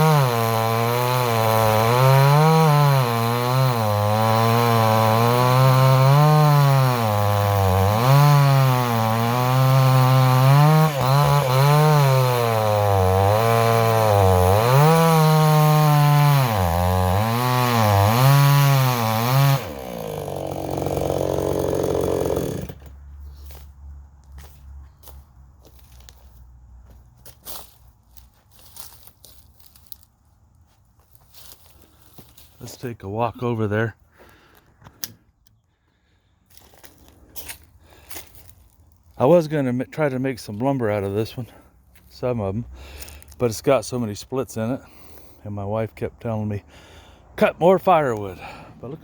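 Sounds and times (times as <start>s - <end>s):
chainsaw cutting log: 0.0s - 23.7s, 46.8s - 49.0s.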